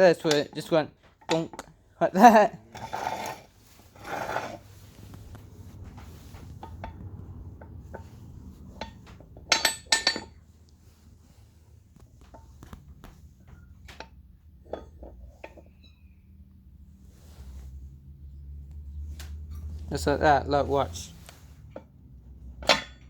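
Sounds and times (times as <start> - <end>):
ratchet axle stand clanking: 8.8 - 10.4.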